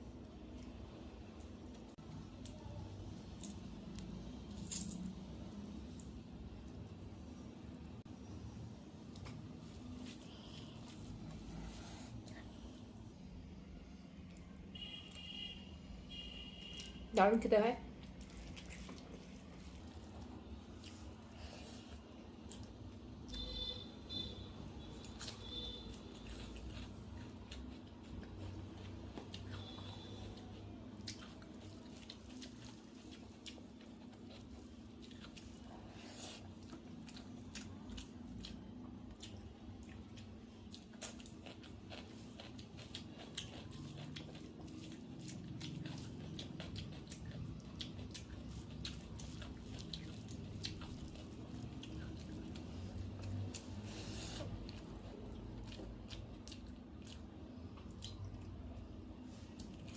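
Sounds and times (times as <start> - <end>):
chewing and smacking: 18.0 - 23.6, 24.9 - 59.9.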